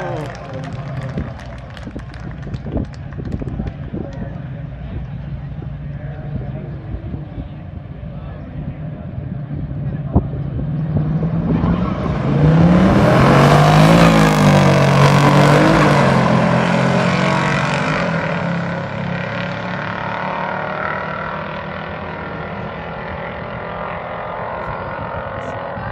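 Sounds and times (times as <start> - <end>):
car engine revving hard: 10.4 - 25.9.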